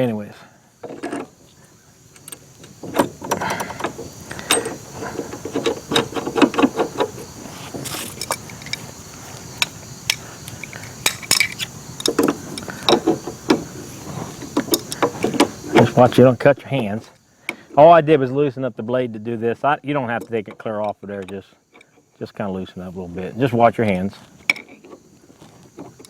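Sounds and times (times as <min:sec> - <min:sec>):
metal tools clicking and clinking: 0:00.8 - 0:01.3, 0:02.2 - 0:08.9, 0:09.6 - 0:13.6, 0:14.4 - 0:16.0, 0:24.5 - 0:25.0.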